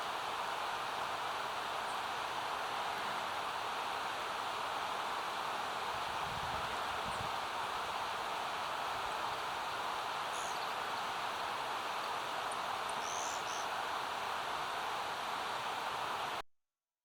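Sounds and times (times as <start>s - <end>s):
high-pitched bird calls: 13.0s - 13.7s.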